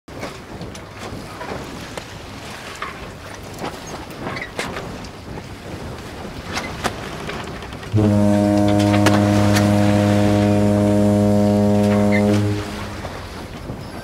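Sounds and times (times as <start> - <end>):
outdoor background: 7.4 - 14.0
boat horn blast: 7.9 - 13.6.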